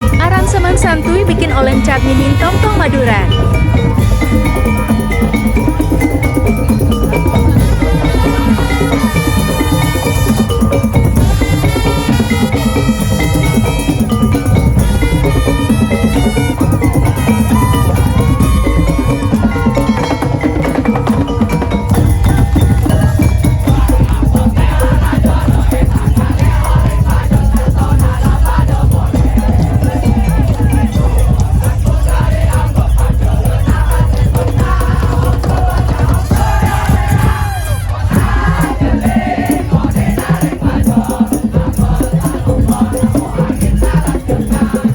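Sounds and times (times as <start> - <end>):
wavering melodic line: 0.0 - 27.3
pitched percussion pattern: 0.0 - 44.9
slit drums and drums playing: 0.0 - 44.9.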